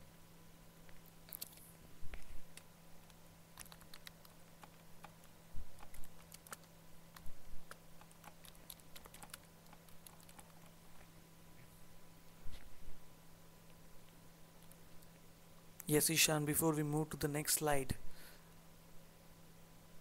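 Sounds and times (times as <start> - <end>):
low electrical hum: 0.0 - 20.0
keyboard key clicks: 2.5 - 10.7.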